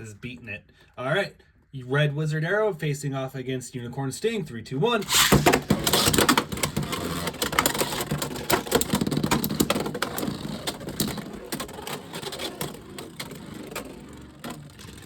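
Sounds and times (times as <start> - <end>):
spinning tops whirring and clattering: 5.0 - 15.0.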